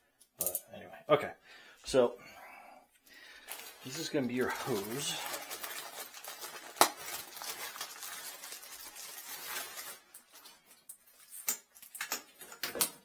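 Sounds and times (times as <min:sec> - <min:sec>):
plastic packaging rustling: 0:03.2 - 0:12.6.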